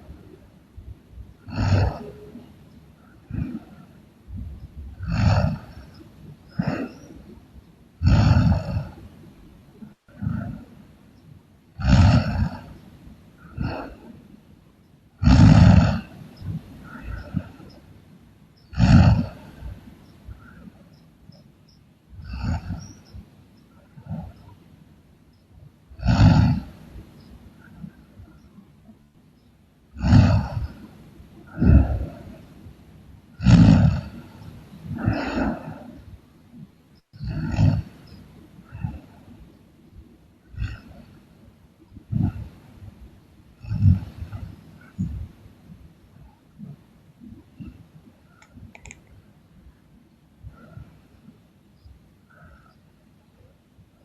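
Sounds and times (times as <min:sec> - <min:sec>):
quiet breathing: 0:00.0 - 0:54.0
person snoring loudly: 0:01.5 - 0:02.2, 0:05.0 - 0:05.9, 0:08.0 - 0:09.0, 0:11.8 - 0:12.7, 0:15.2 - 0:16.1, 0:18.7 - 0:19.6, 0:22.2 - 0:22.8, 0:26.0 - 0:26.7, 0:30.0 - 0:30.8, 0:33.4 - 0:34.2, 0:37.2 - 0:37.9.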